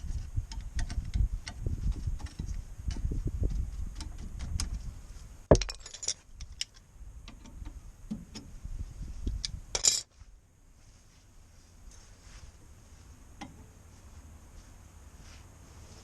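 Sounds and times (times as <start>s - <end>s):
metal clatter: 5.5s - 6.8s
metal tools knocking and clinking: 5.5s - 6.8s, 9.8s - 10.1s.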